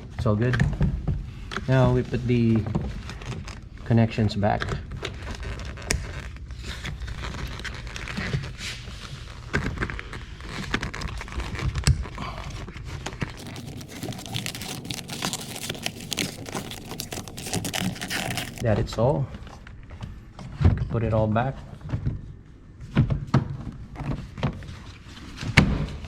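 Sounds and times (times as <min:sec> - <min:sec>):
rustling: 0:05.0 - 0:18.6.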